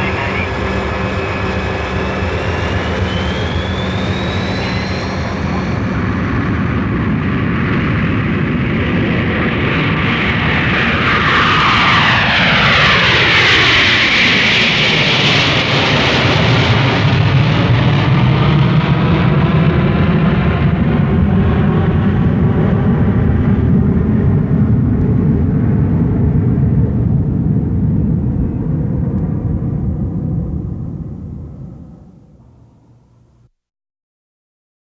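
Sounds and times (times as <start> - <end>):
tones gliding downward: 0.0 - 6.8
aircraft engines and rushing air: 0.0 - 33.4.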